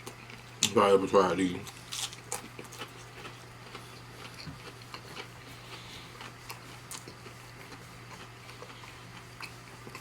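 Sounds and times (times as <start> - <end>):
person chewing food: 0.0 - 0.8, 1.6 - 10.0
steady low hum: 0.0 - 10.0.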